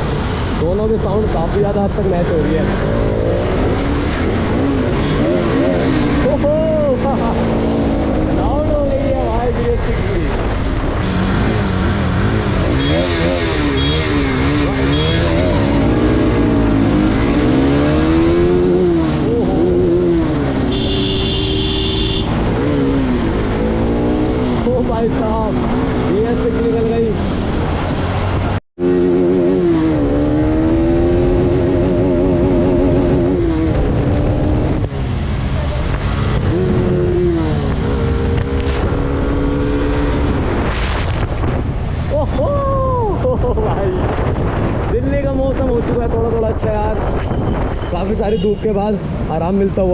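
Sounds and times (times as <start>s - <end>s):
motorcycle engines at speed: 0.0s - 49.9s
wind noise on microphone: 29.6s - 49.9s.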